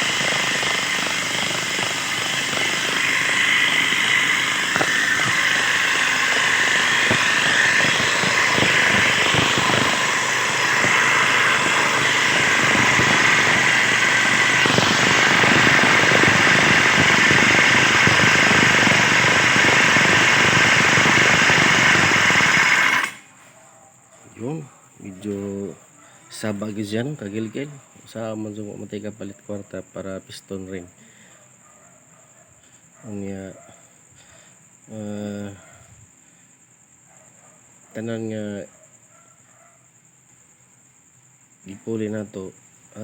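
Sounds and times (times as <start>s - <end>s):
two-stroke mower engine running: 0.0s - 23.2s.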